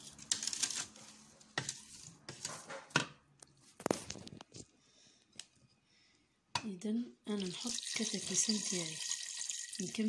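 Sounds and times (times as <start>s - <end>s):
water pouring: 7.4s - 10.0s.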